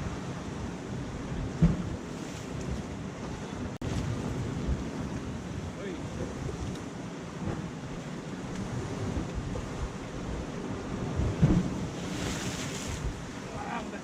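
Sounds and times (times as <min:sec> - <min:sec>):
surf washing on rocks: 0:00.0 - 0:14.0
wind rumbling on microphone: 0:00.0 - 0:14.0
short thump: 0:01.6 - 0:01.9.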